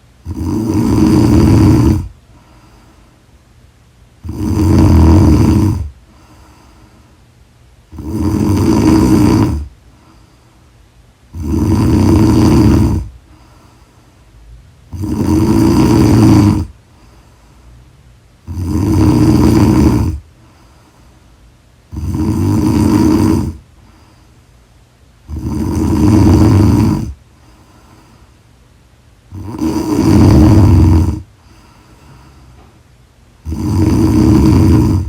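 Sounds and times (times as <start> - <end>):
quiet breaths: 0.0 - 35.0
woman snoring loudly: 0.2 - 2.1, 4.2 - 6.0, 7.9 - 9.7, 11.3 - 13.2, 14.9 - 16.8, 18.4 - 20.2, 21.9 - 23.6, 25.3 - 27.2, 29.3 - 31.3, 33.4 - 35.0.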